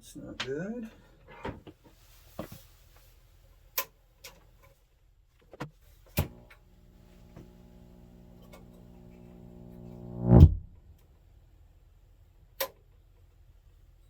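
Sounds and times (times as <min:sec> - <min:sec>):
preamp buzzing hum: 0:06.2 - 0:11.0.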